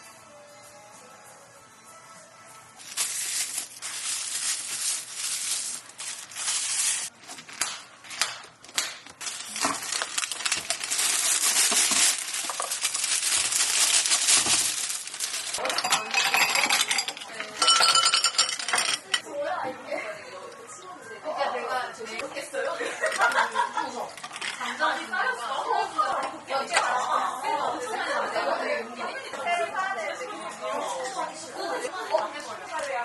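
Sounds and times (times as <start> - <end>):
clinks of glass and metal: 15.6 - 19.2.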